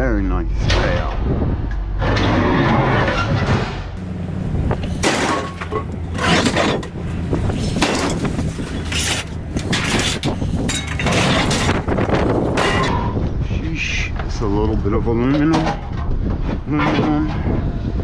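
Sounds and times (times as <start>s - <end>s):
metal crashes: 2.0s - 13.1s
scrap metal clanking and scraping: 2.0s - 13.2s, 15.3s - 17.6s
engine idling: 4.0s - 12.3s.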